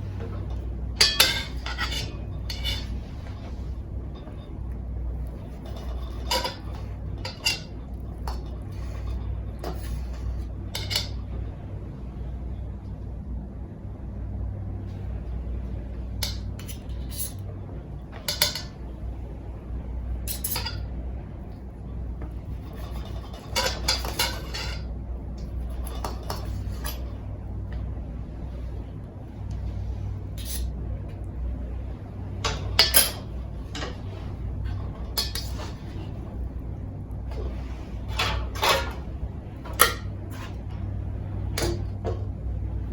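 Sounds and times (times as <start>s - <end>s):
steady low hum: 0.0s - 42.9s
metal utensils clinking on cookware: 0.2s - 4.6s, 5.2s - 11.3s, 16.2s - 17.4s, 18.2s - 18.8s, 20.2s - 20.9s, 22.5s - 24.9s, 30.3s - 30.7s, 32.4s - 36.1s, 37.4s - 39.0s, 39.6s - 40.6s.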